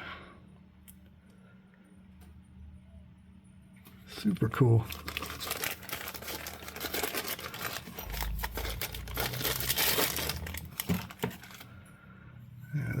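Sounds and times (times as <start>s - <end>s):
packaging crinkling: 4.8s - 11.7s.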